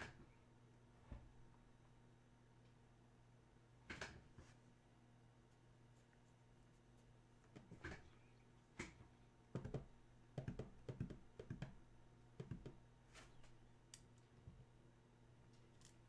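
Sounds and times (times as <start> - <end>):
hands clicking and tapping: 9.6 - 11.8, 12.4 - 12.8.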